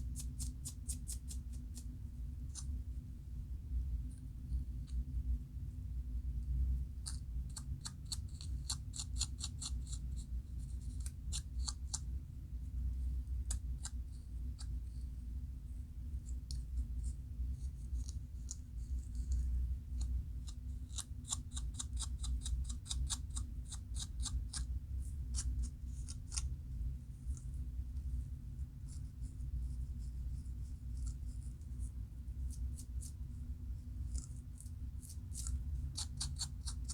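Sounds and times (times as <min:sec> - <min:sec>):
scratching scalp: 0:00.0 - 0:01.9, 0:20.9 - 0:26.6, 0:28.8 - 0:36.9.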